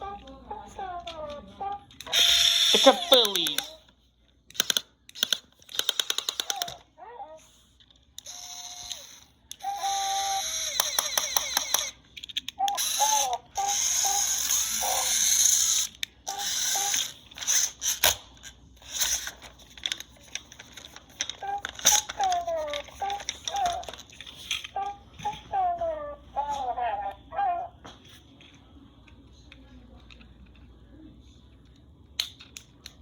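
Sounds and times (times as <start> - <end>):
toy robot electronic beeps: 1.6 - 3.8, 8.2 - 12.0, 12.6 - 18.0.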